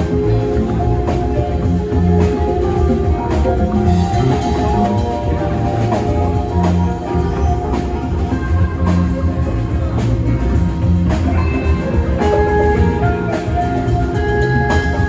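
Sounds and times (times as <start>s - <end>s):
drums: 0.0s - 15.0s
live band playing loudly: 0.0s - 15.0s
low sustained bass line: 0.0s - 15.0s.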